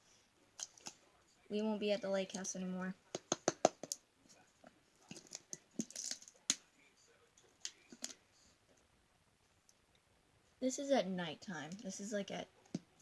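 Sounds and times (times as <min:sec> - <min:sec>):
small objects clicking and tapping: 0:00.6 - 0:01.0, 0:03.1 - 0:04.4, 0:05.0 - 0:06.7, 0:07.4 - 0:08.2.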